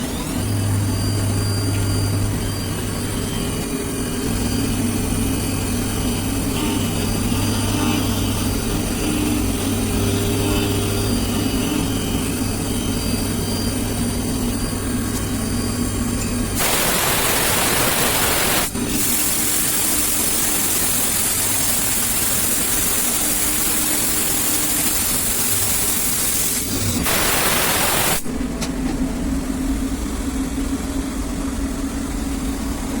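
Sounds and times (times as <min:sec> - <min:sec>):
milling machine hiss and hum: 0:00.0 - 0:28.6.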